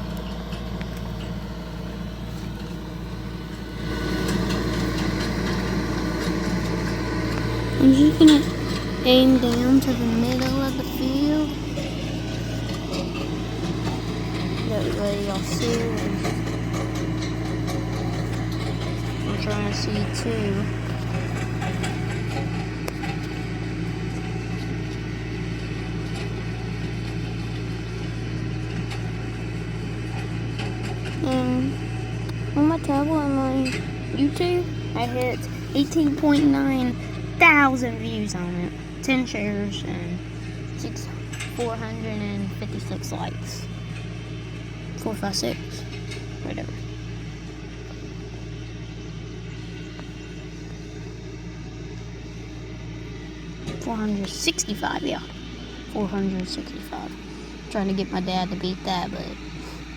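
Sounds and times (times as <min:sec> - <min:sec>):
vehicle engine idling: 0:00.0 - 0:59.9.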